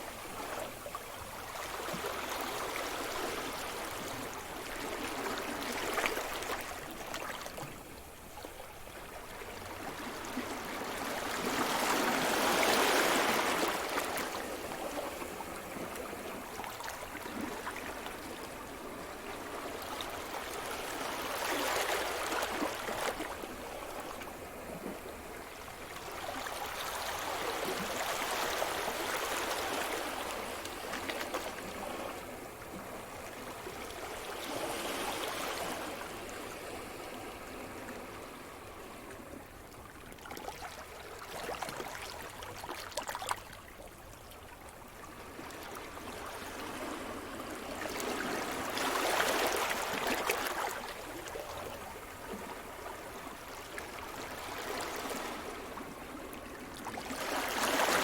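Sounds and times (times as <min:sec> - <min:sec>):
waves breaking on shore: 0:45.8 - 0:58.0.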